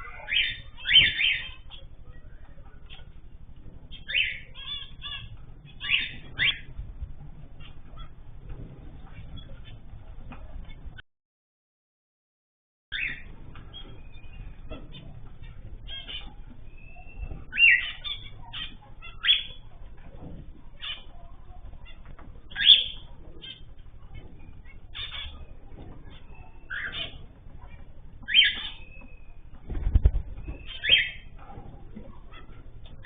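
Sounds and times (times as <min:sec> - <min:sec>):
birds chirping and calling: 0:00.0 - 0:11.0, 0:12.9 - 0:33.0.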